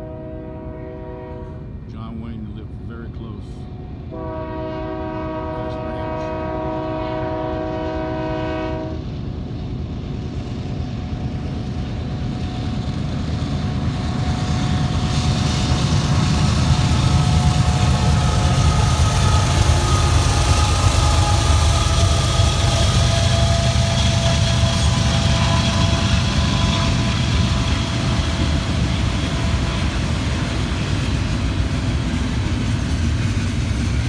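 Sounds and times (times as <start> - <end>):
locomotive horn: 0.0 - 1.7, 4.1 - 9.0, 17.4 - 28.6
locomotive engine rumble: 0.0 - 34.0.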